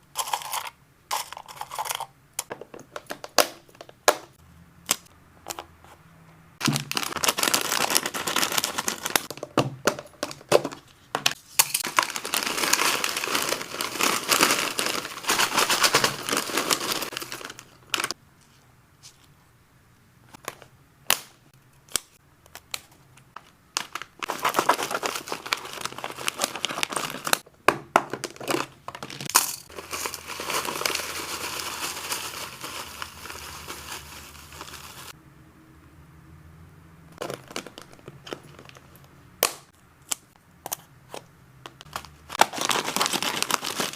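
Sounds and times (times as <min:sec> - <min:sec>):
plastic packaging crinkling: 0:06.6 - 0:10.9, 0:11.8 - 0:18.2, 0:23.4 - 0:27.4, 0:28.2 - 0:35.2, 0:37.2 - 0:39.0, 0:41.8 - 0:43.9.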